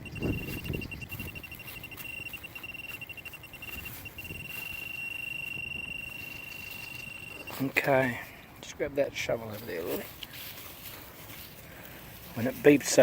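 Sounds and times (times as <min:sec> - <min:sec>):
metal detector beeping: 0:00.0 - 0:08.1.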